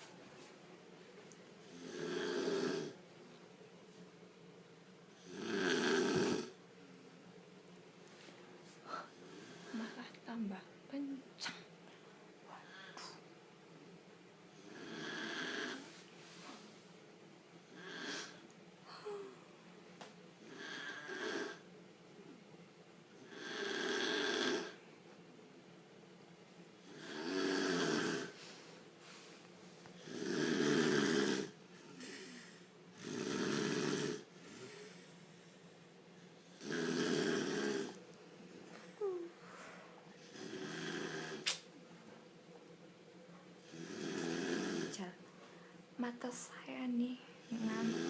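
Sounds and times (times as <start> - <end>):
woman snoring loudly: 1.6 - 3.0, 5.2 - 6.6, 8.9 - 10.0, 14.6 - 16.0, 17.7 - 19.4, 20.4 - 21.6, 23.2 - 24.8, 26.8 - 28.4, 30.0 - 35.0, 36.4 - 38.0, 40.2 - 41.4, 43.6 - 45.0, 47.4 - 48.0.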